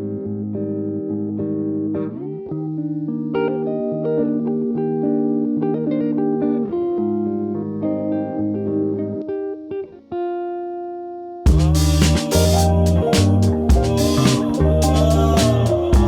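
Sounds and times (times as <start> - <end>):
plucked guitar melody: 0.0 - 16.0
held bass line: 11.5 - 16.0.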